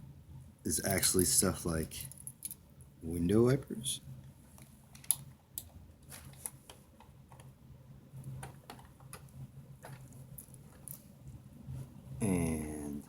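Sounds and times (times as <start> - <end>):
small plastic parts clicking: 4.9 - 5.7.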